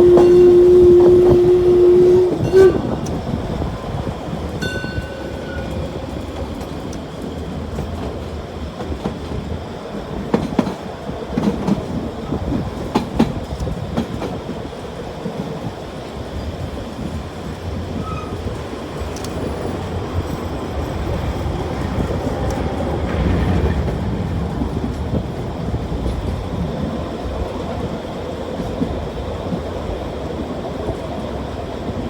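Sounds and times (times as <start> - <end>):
steam train whistle: 0.0 - 3.5, 18.0 - 18.4
train rumbling on rails: 0.0 - 32.0.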